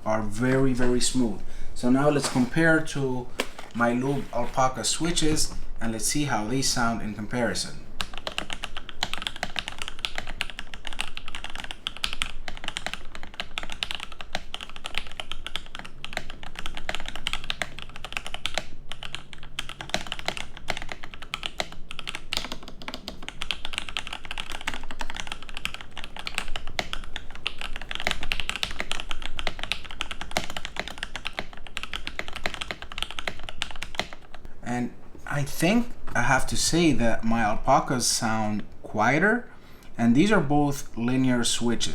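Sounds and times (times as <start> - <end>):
typing on mechanical keyboard: 8.0 - 34.5.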